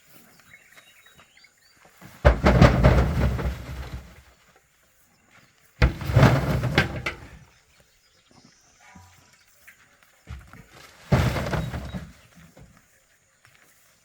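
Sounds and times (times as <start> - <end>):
corn clattering into truck bed: 2.0 - 4.4, 5.8 - 7.5, 10.3 - 12.8.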